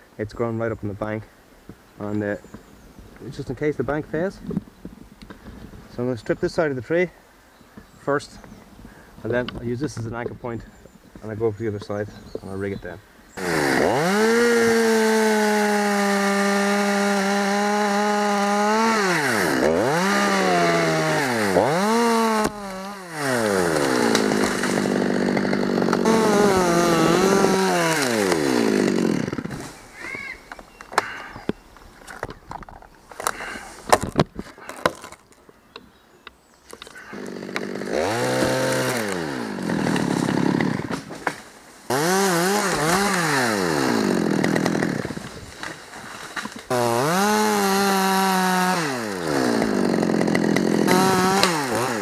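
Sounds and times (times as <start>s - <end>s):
chainsaw revving: 13.4s - 29.8s, 37.0s - 41.2s, 41.9s - 45.7s, 46.4s - 52.0s.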